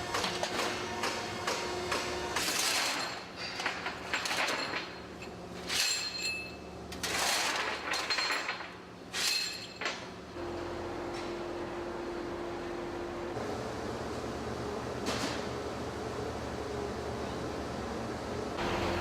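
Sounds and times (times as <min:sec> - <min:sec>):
metal parts clinking and scraping: 0:02.5 - 0:10.1
steady machine hum: 0:10.2 - 0:19.0.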